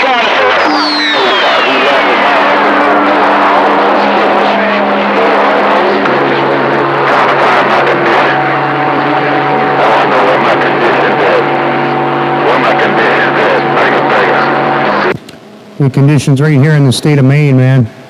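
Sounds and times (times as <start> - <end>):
radio carrier whistles: 0.0 - 15.1
radio static hiss: 0.0 - 18.0.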